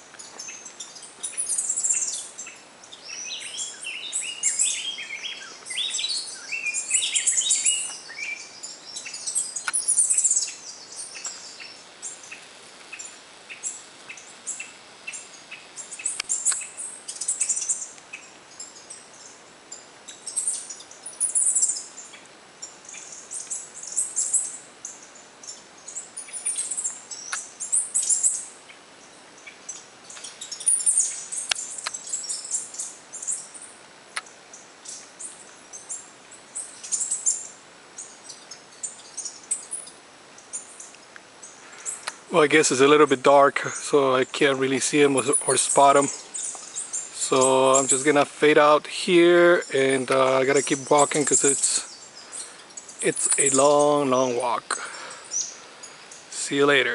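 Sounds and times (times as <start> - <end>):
birds chattering calls: 0.0 - 56.9
birds singing: 0.0 - 56.9.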